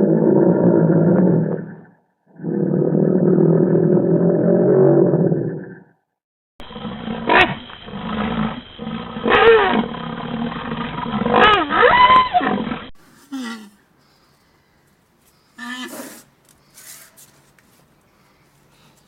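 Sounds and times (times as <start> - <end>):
rhinoceros roaring: 0.0 - 5.9, 6.6 - 13.0.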